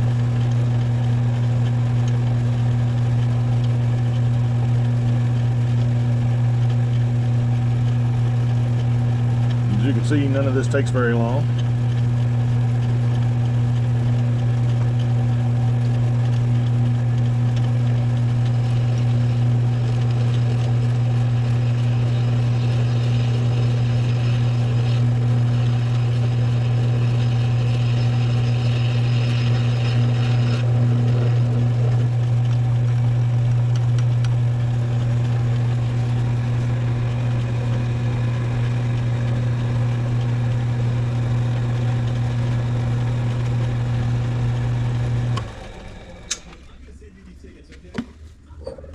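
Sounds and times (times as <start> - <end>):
lathe motor hum: 0.0 - 47.7.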